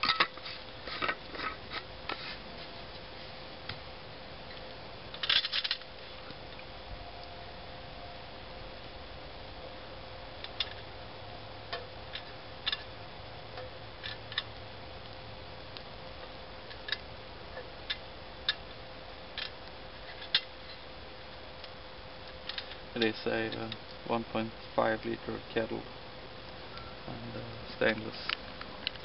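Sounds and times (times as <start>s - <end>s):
heating kettle ticking and popping: 10.4s - 11.0s, 11.6s - 24.1s.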